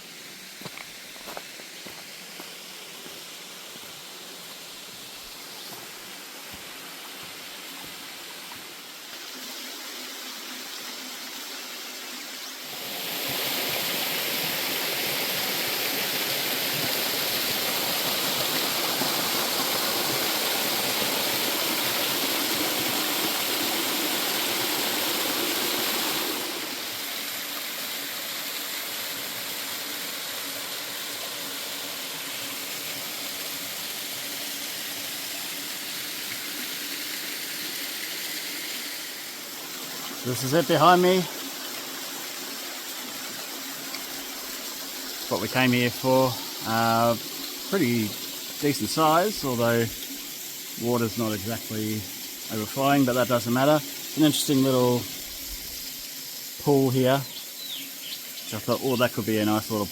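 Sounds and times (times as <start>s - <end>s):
waterfall rushing: 12.6s - 59.9s.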